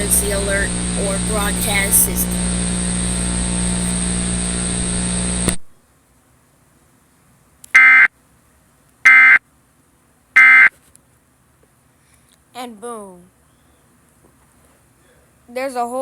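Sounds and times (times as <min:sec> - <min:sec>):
steady hum and hiss: 0:00.0 - 0:16.0
digital data tone bursts: 0:10.4 - 0:10.7.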